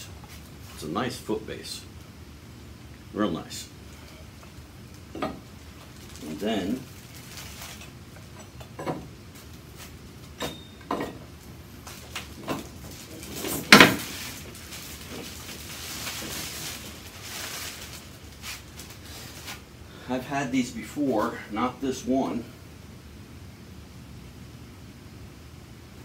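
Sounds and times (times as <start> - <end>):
soft rustling: 11.3 - 19.7.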